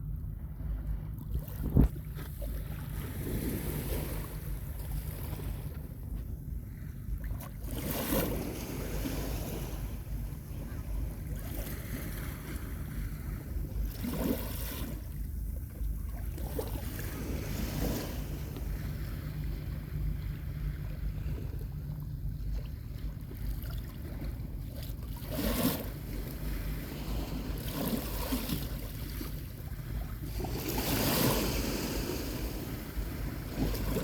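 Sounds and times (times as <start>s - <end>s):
wind rumble on microphone: 0.0s - 34.0s
sea waves washing on beach: 25.2s - 34.0s.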